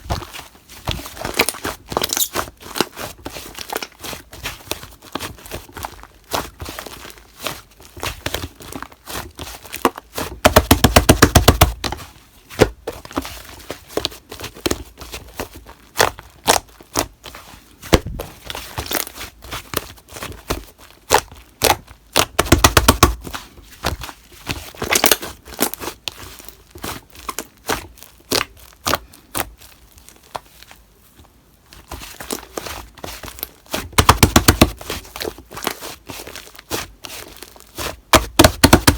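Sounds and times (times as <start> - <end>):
slime popping and crackling: 17.8 - 19.2, 24.8 - 26.5.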